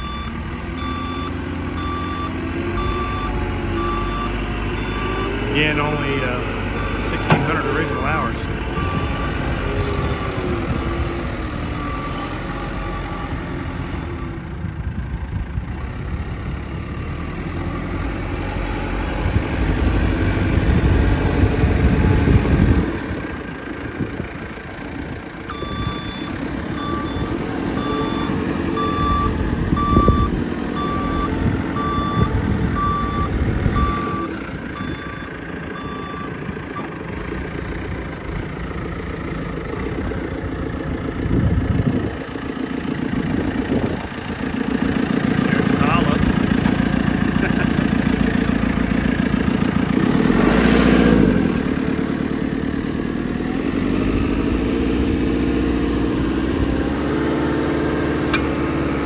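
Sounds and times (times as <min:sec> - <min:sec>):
reversing alarm beeping: 0:00.0 - 0:11.1, 0:25.5 - 0:37.1
diesel engine running: 0:00.0 - 0:59.0.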